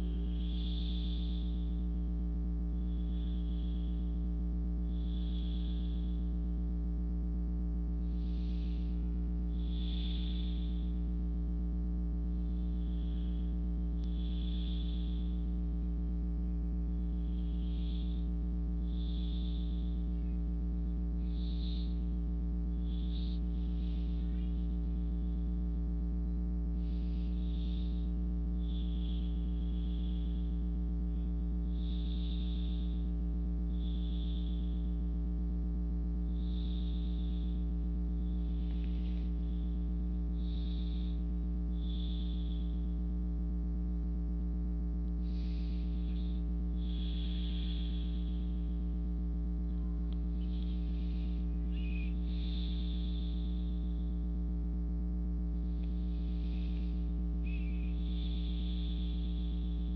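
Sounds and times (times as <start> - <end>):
person breathing softly: 0.0 - 44.4, 45.0 - 59.9
low electrical hum: 0.0 - 59.9.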